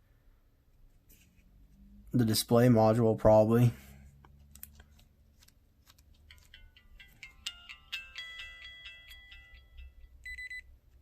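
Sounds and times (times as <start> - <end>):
phone beeping electronic tune: 8.4 - 10.7.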